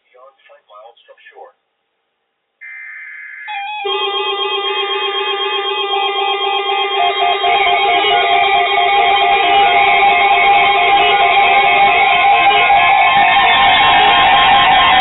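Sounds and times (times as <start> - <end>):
steady held tones: 2.6 - 15.0
plucked guitar-like pattern: 3.8 - 15.0.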